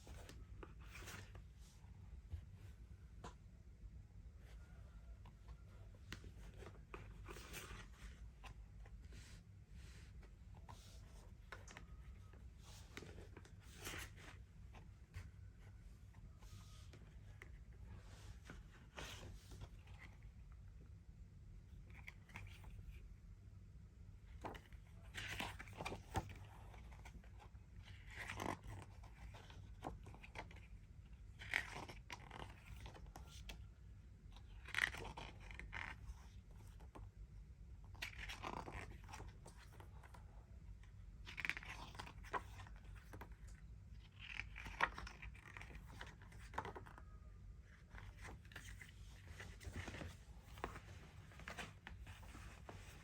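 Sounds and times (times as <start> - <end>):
low steady hum: 0.0 - 53.0.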